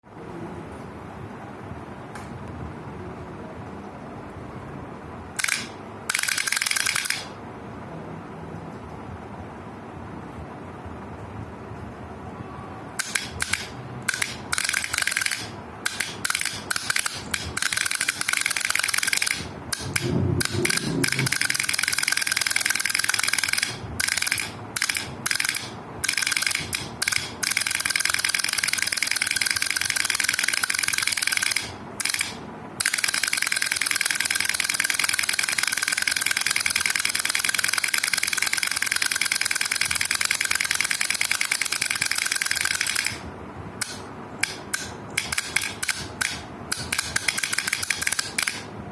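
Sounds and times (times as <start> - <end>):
electrical contactor chattering: 5.4 - 7.4, 13.0 - 48.8.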